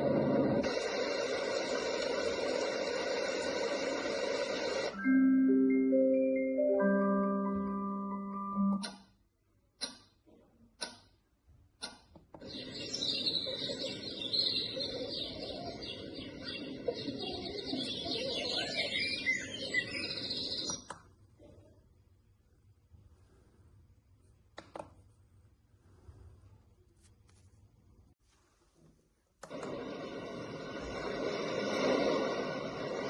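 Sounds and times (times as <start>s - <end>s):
marimba-like chime melody: 5.0s - 8.8s
clicks: 8.8s - 9.1s, 9.8s - 10.2s, 10.8s - 11.2s, 11.8s - 12.5s, 20.7s - 21.1s, 24.5s - 25.0s, 29.4s - 29.9s
birdsong nature sounds: 12.4s - 20.9s.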